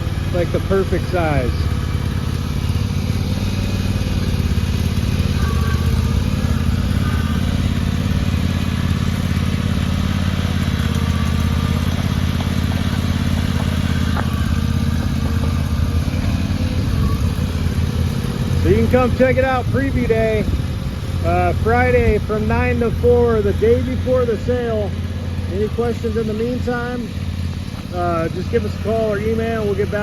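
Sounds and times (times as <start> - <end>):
mini excavator engine running: 0.0 - 30.0.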